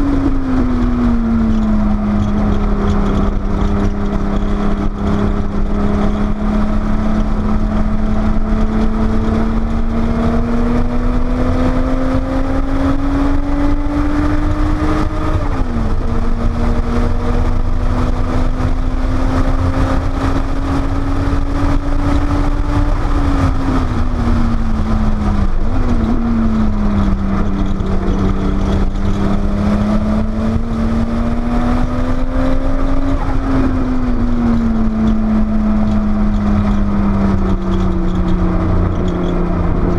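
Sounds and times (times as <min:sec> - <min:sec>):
car engine revving: 0:00.0 - 0:39.9
road and wind rumble: 0:00.0 - 0:39.9.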